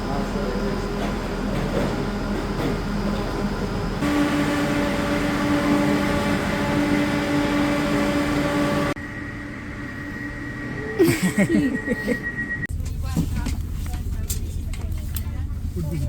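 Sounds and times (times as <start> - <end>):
train running inside carriage: 0.0 - 16.0
thin high tone: 4.0 - 12.7.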